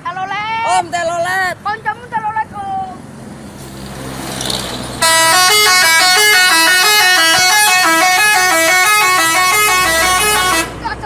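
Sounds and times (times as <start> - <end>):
bus engine running: 0.0 - 11.0
multi-tone bus horn melody: 5.0 - 11.0.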